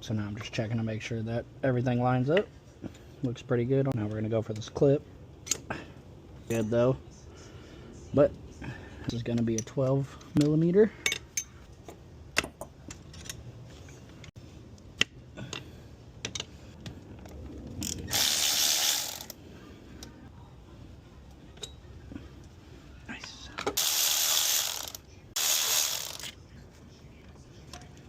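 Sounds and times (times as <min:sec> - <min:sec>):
rapid ratcheting: 0:17.8 - 0:19.4, 0:23.8 - 0:26.3
ratchet wrench clicking: 0:17.8 - 0:19.4, 0:23.8 - 0:26.3.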